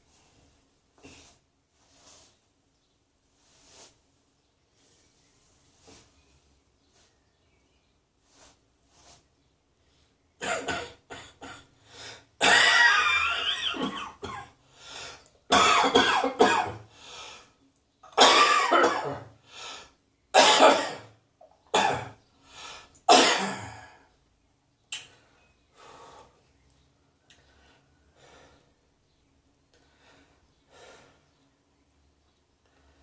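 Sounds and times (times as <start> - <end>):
person coughing: 10.4 - 11.7, 12.4 - 14.6, 15.5 - 16.8, 18.2 - 19.3, 20.4 - 21.1, 21.8 - 22.1, 23.1 - 23.9.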